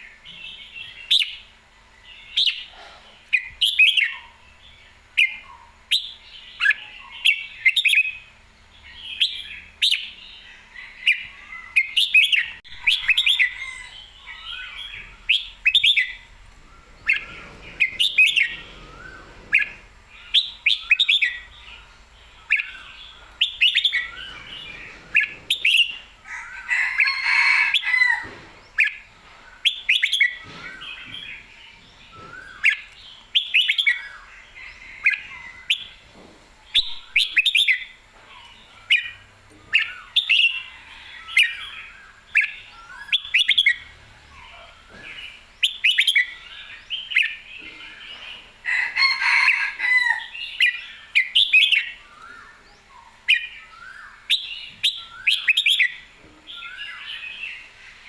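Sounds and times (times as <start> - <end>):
bulbul singing whistled phrases: 11.0 - 26.1, 50.5 - 57.8.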